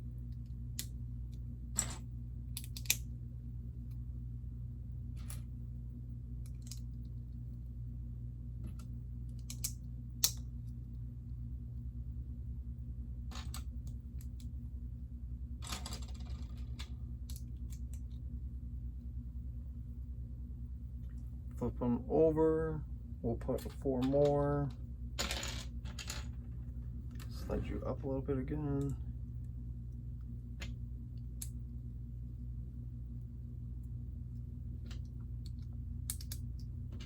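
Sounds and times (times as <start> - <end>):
steady low hum: 0.0 - 37.0.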